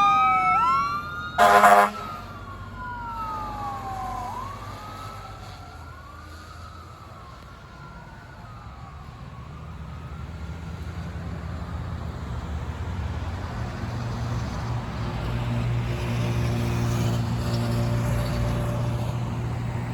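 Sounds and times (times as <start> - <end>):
siren wail: 0.0 - 12.4
fire engine engine: 0.0 - 19.9.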